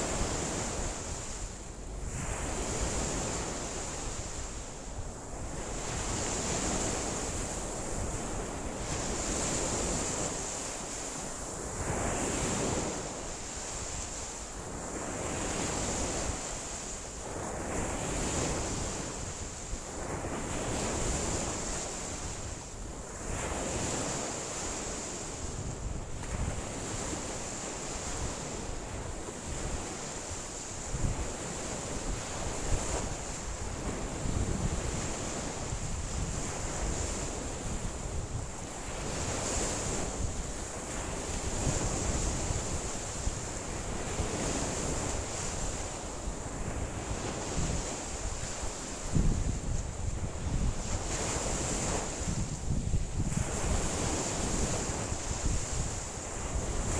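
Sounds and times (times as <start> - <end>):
wind gusting against microphone: 25.4 - 56.9
lake waves washing ashore: 26.3 - 56.9.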